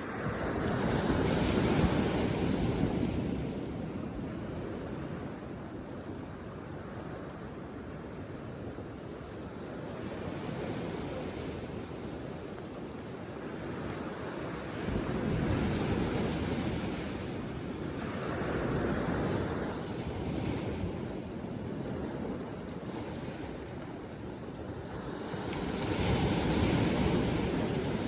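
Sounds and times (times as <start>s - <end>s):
ocean waves breaking: 13.5s - 28.0s.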